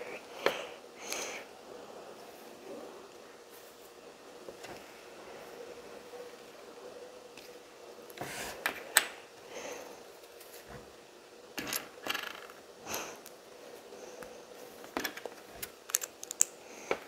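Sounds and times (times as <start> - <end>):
plastic pieces clicking and rattling: 15.0 - 16.6.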